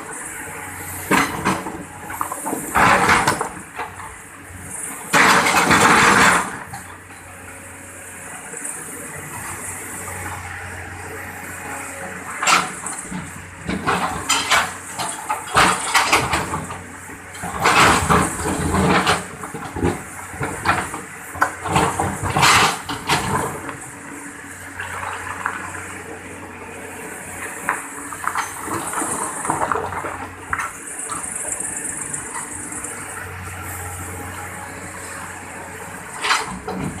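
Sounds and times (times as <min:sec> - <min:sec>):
excavator engine hum: 0:00.0 - 0:37.0
excavator clattering knocks: 0:01.1 - 0:03.9, 0:05.1 - 0:06.9, 0:12.4 - 0:23.8.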